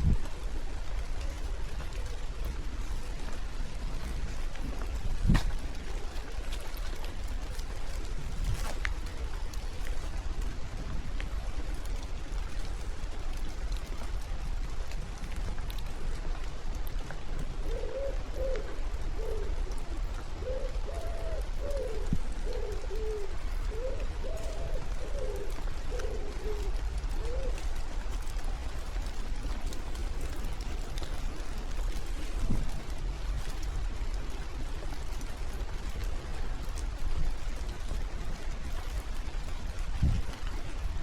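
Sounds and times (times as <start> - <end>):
light rain hiss: 0.0 - 41.0
pigeon cooing: 17.6 - 27.7.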